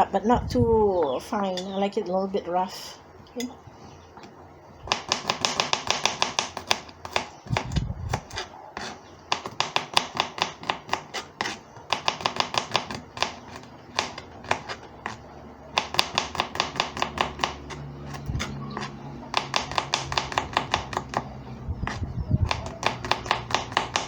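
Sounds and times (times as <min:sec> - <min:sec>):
knife chopping garlic on board: 0:04.9 - 0:24.0.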